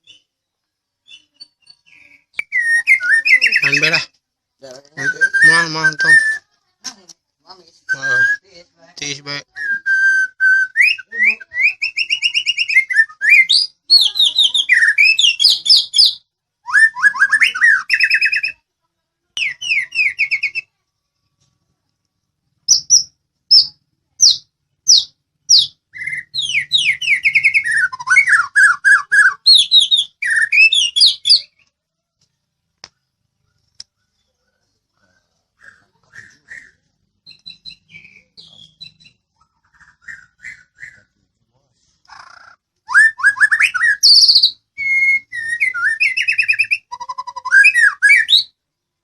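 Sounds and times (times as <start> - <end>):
bird singing trills and whistles: 0.0 - 0.4, 1.0 - 4.0, 5.0 - 6.4, 9.4 - 18.6, 19.4 - 20.7, 22.7 - 31.8, 35.6 - 41.2, 42.1 - 48.6.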